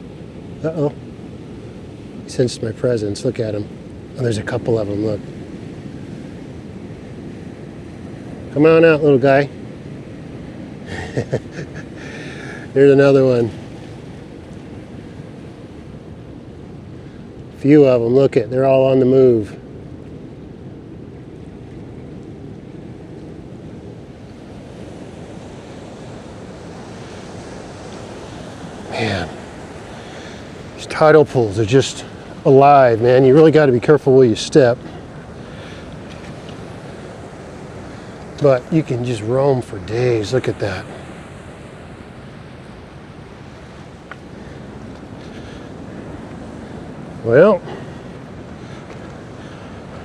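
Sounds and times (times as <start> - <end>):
ocean surf on rocks: 0.0 - 50.0
wind on microphone: 18.7 - 50.0.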